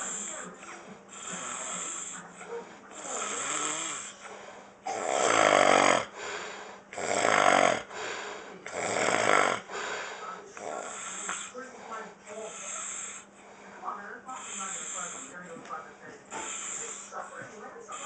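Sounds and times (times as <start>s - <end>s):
man snoring: 0.0s - 0.5s, 1.1s - 2.2s, 3.0s - 4.2s, 4.9s - 10.0s.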